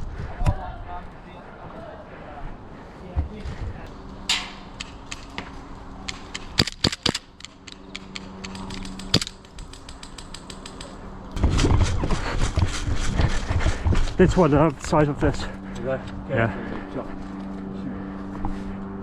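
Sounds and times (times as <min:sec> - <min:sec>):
airsoft guns firing: 0:06.1 - 0:10.9.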